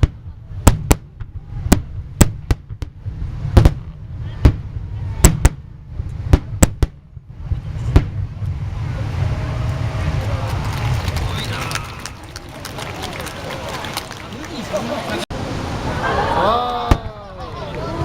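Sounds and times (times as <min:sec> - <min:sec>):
low rumble: 0:00.0 - 0:14.1
fireworks bangs: 0:00.0 - 0:15.2.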